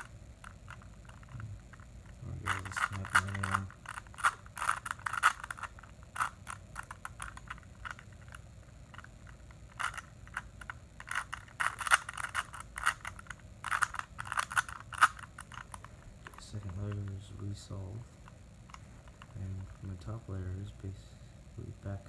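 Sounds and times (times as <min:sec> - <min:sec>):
plastic puzzle cube clicking: 0:02.4 - 0:16.4.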